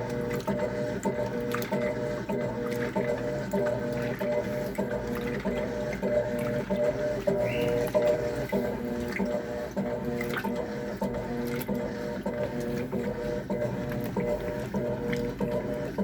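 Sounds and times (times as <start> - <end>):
washing machine whirring: 0.0 - 16.0.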